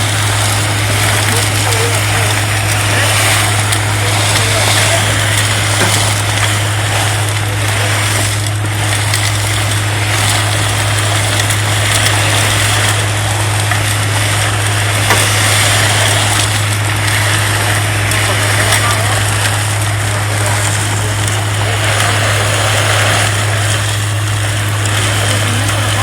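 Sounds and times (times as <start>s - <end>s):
suction system droning: 0.0s - 26.0s.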